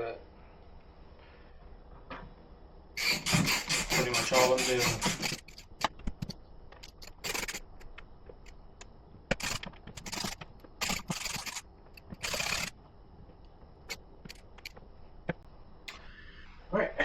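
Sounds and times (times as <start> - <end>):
scraping rasps: 3.0 - 8.5, 9.3 - 12.7.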